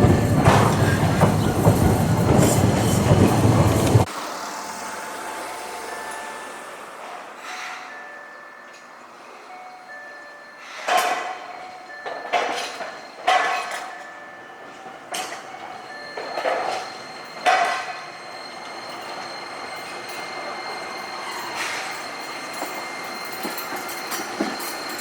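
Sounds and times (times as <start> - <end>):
streetcar wheels clanking over rails: 0.0 - 4.8, 10.8 - 25.0
streetcar running: 0.0 - 25.0.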